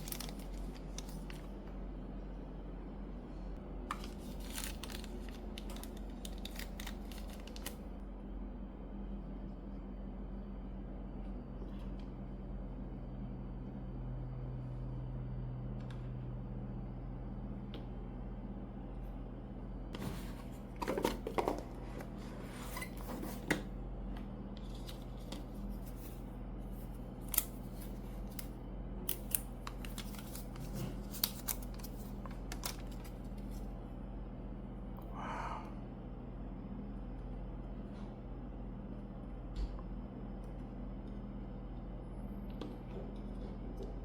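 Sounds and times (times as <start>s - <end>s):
packaging clicks and rustles: 0.0s - 1.5s, 3.9s - 7.8s, 29.1s - 33.6s
steady low hum: 0.0s - 44.0s.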